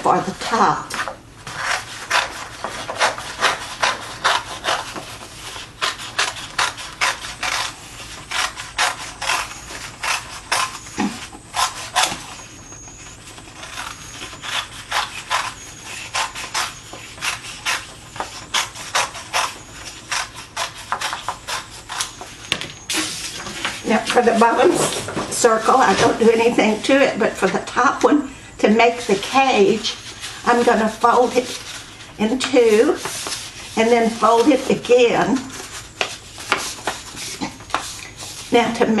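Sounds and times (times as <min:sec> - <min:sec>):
scissors snipping paper: 0:01.5 - 0:05.1, 0:05.8 - 0:12.2.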